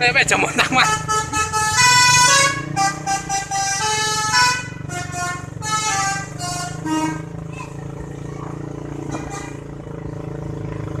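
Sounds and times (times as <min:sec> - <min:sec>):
bus engine running: 0:00.0 - 0:11.0
bus musical horn: 0:00.6 - 0:07.6, 0:09.1 - 0:09.8.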